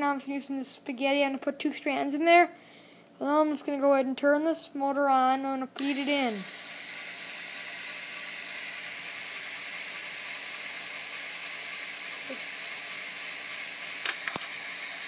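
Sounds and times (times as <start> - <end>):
motor whirring gear rattle: 5.8 - 15.0
sharp click: 14.0 - 14.5.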